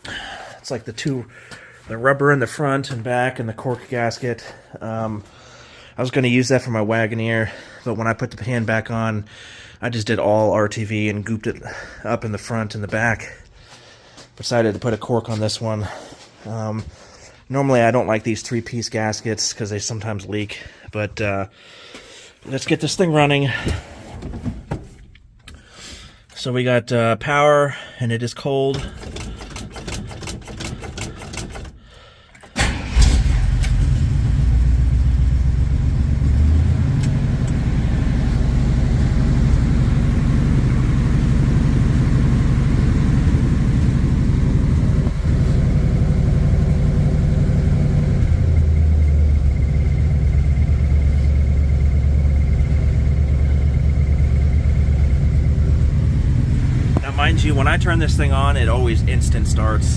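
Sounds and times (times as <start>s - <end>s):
engine starter cranking: 28.8s - 34.2s
engine idling: 28.8s - 59.9s.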